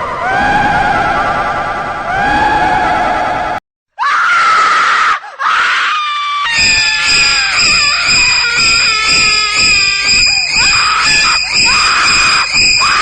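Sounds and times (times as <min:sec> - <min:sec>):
high screams: 0:04.0 - 0:13.0.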